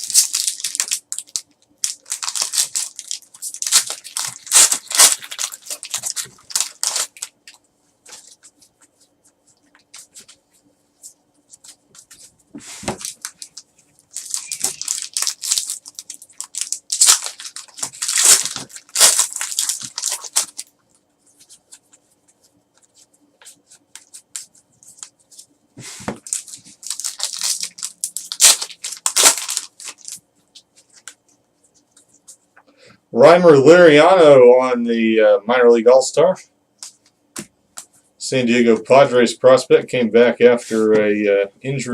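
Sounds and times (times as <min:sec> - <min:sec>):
card pack wrappers tearing: 0:00.0 - 0:08.4, 0:12.9 - 0:20.7, 0:26.2 - 0:30.2.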